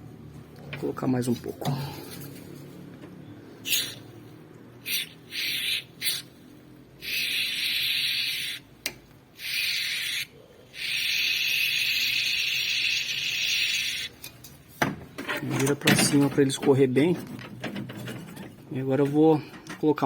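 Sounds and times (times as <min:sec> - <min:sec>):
aerosol can spraying: 0:03.6 - 0:04.1, 0:04.9 - 0:06.3, 0:07.0 - 0:08.6, 0:09.4 - 0:14.1.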